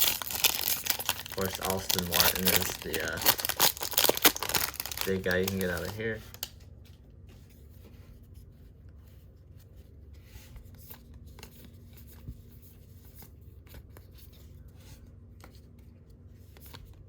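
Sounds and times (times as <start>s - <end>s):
cards and foil wrapper rustling: 0.0s - 6.6s
low steady hum: 0.0s - 17.0s.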